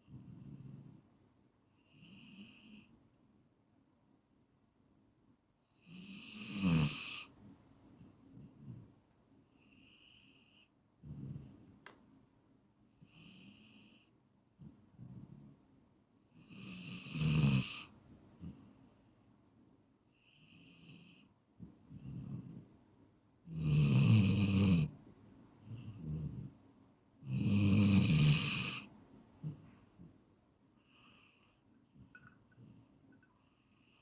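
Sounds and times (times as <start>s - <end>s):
soft breathing: 17.8s - 22.8s, 28.8s - 34.0s
person snoring: 27.2s - 29.6s.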